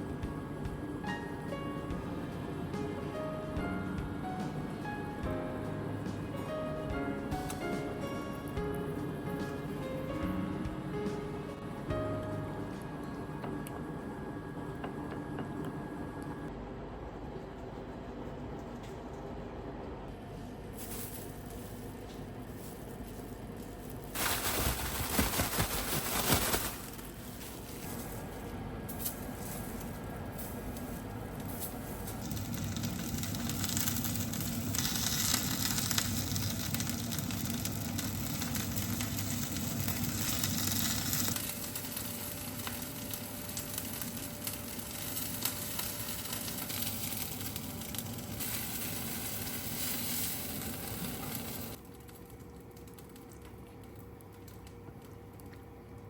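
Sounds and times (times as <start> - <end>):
food sizzling in a pan: 24.2 - 26.8, 32.0 - 51.8.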